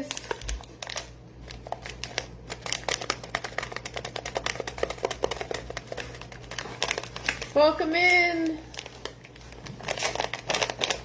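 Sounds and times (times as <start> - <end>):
steady low hum: 0.0 - 11.0
rapid small clicks and taps: 2.1 - 7.0.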